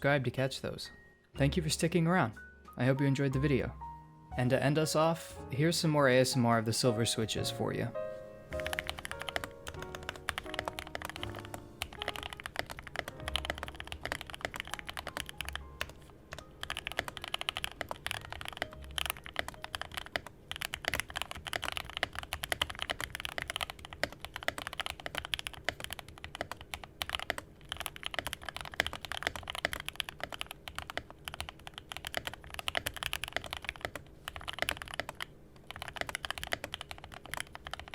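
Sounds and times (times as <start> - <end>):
mechanical keyboard typing: 8.6 - 37.9.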